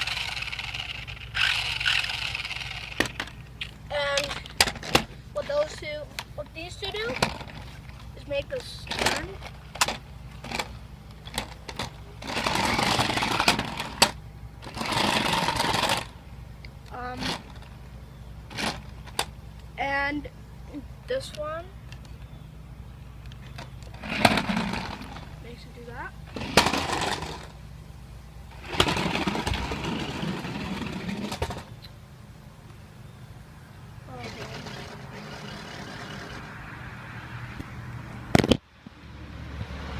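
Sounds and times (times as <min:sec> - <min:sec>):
toy car motor whirring: 0:00.0 - 0:05.8, 0:08.3 - 0:16.1, 0:16.9 - 0:17.6, 0:26.3 - 0:27.5, 0:28.5 - 0:31.6, 0:34.1 - 0:36.5.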